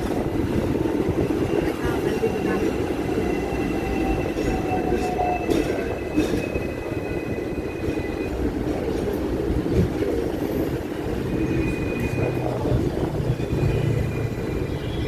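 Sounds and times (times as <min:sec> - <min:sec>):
tram rumbling on rails: 0:00.0 - 0:15.0
high wheel squeal: 0:10.5 - 0:15.0.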